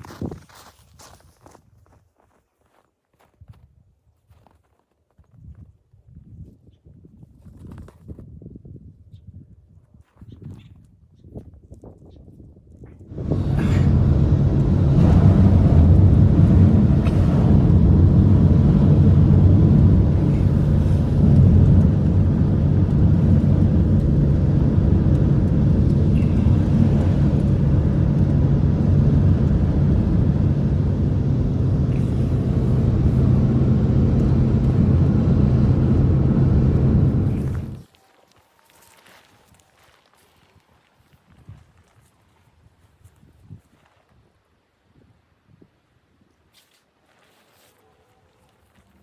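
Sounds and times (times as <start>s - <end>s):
engine running steadily: 13.1s - 37.8s.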